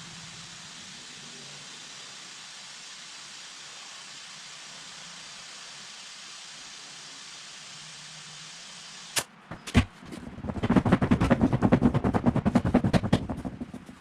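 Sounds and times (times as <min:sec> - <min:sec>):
steady air hiss: 0:00.0 - 0:09.4.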